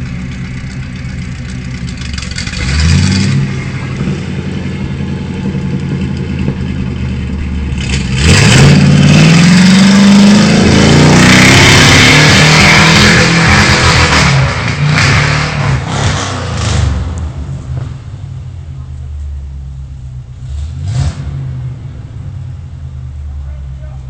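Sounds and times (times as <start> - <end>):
truck engine revving: 0.0 - 18.4, 20.2 - 23.4
loud rushing noise: 2.6 - 18.1.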